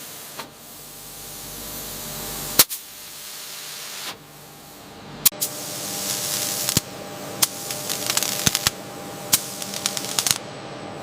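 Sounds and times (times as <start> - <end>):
laser cutter hissing: 0.0 - 10.4
sharp clicks and crackles: 6.1 - 10.4.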